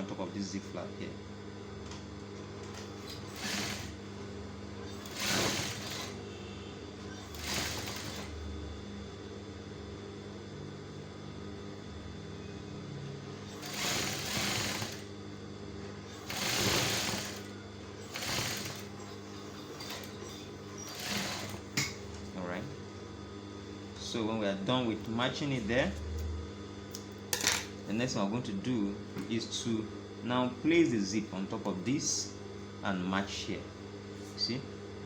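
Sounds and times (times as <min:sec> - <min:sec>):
sewing machine stitching: 0:02.7 - 0:04.0, 0:04.9 - 0:06.2, 0:07.1 - 0:08.3, 0:13.5 - 0:15.1, 0:16.2 - 0:21.9.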